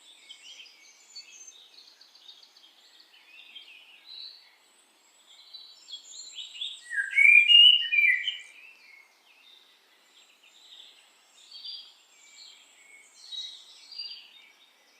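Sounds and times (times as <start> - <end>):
birds chirping: 5.4 - 9.6.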